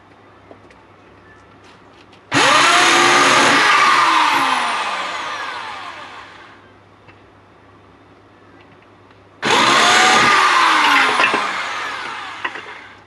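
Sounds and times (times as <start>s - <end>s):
power tool motor whine: 2.3s - 6.6s, 9.4s - 13.0s.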